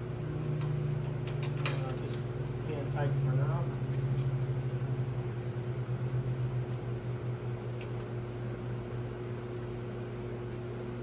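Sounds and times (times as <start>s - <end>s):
motor humming: 10.8s - 11.0s.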